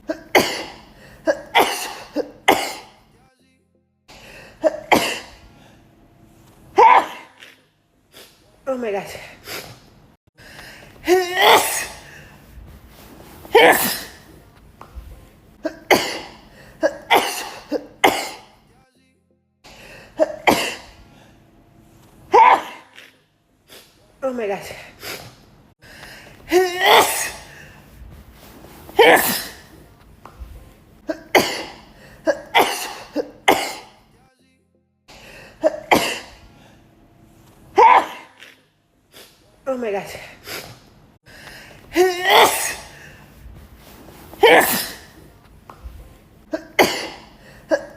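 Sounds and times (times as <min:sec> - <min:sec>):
woman sneezing: 0:00.0 - 0:03.0, 0:04.6 - 0:05.4, 0:06.8 - 0:07.6, 0:11.0 - 0:12.2, 0:13.4 - 0:14.3, 0:15.6 - 0:18.5, 0:20.2 - 0:21.0, 0:22.3 - 0:23.2, 0:26.5 - 0:27.6, 0:28.9 - 0:29.8, 0:31.0 - 0:34.0, 0:35.2 - 0:36.4, 0:37.7 - 0:38.6, 0:41.9 - 0:43.1, 0:44.3 - 0:45.2, 0:46.5 - 0:47.9.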